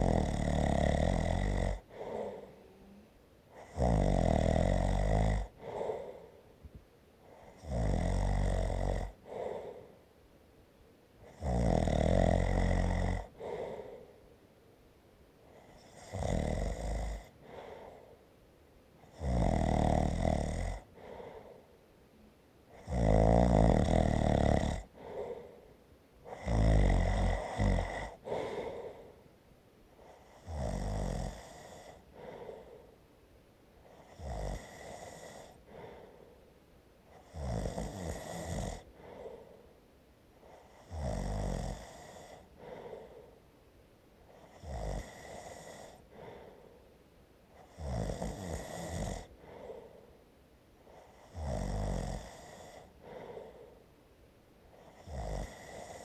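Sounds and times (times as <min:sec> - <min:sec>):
person snoring: 0:00.0 - 0:06.4, 0:07.4 - 0:09.9, 0:11.3 - 0:14.1, 0:15.7 - 0:18.0, 0:19.1 - 0:21.6, 0:22.8 - 0:25.6, 0:26.3 - 0:29.2, 0:30.1 - 0:32.9, 0:33.9 - 0:36.2, 0:37.2 - 0:39.5, 0:40.6 - 0:43.3, 0:44.4 - 0:46.6, 0:47.7 - 0:49.9, 0:51.1 - 0:53.8, 0:54.8 - 0:56.0.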